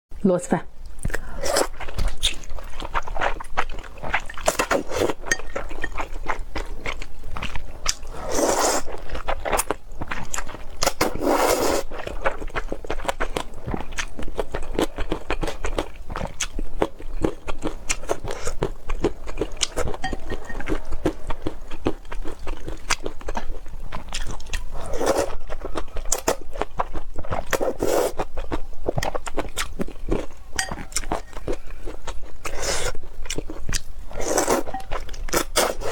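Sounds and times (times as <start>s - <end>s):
person chewing and biting food: 1.0s - 35.9s.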